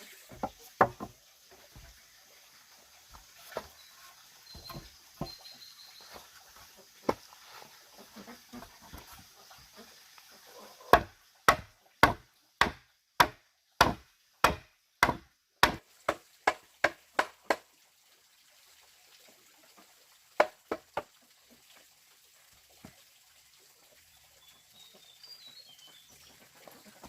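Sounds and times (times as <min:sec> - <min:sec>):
tool striking wood: 0:00.3 - 0:01.1, 0:10.9 - 0:17.6.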